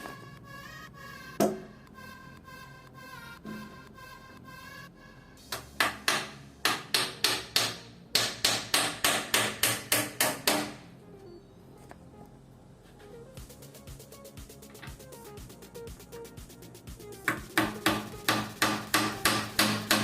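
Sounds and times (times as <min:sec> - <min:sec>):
hammer driving nails into wood: 0:17.6 - 0:20.0.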